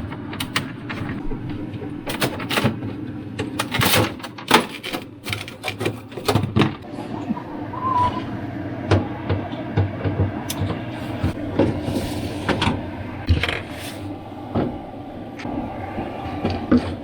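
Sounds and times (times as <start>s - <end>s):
steady low hum: 6.0s - 17.0s.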